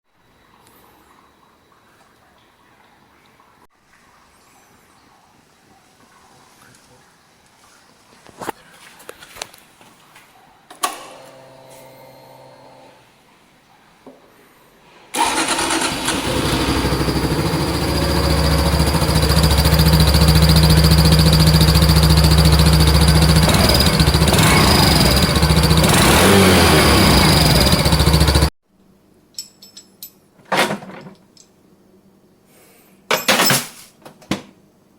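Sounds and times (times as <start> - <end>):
motorcycle engine running: 15.2 - 28.5
exhaust whistle: 16.1 - 28.3.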